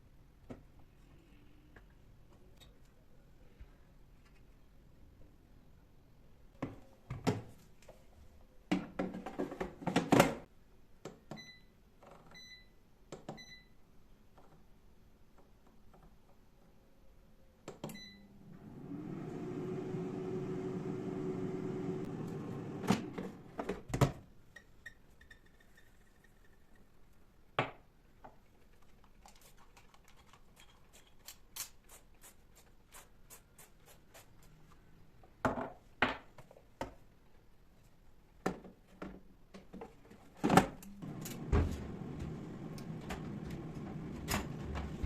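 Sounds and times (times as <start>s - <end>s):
air fryer beeps: 17.9s - 18.4s
fan motor humming: 18.5s - 23.0s, 41.0s - 45.0s.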